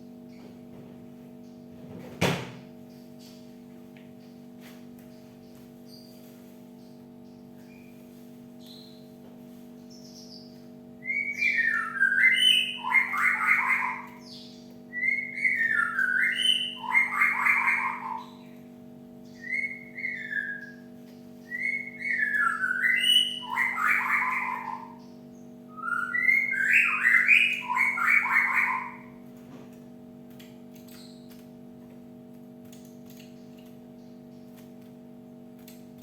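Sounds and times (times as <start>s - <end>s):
bird whistles and rattling chatter: 9.7s - 29.8s, 30.5s - 31.5s.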